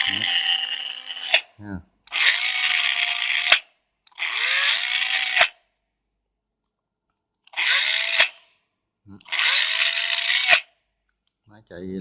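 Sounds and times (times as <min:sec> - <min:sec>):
cordless drill motor whirring: 0:00.0 - 0:01.4, 0:02.1 - 0:05.5, 0:07.5 - 0:08.4, 0:09.2 - 0:10.7.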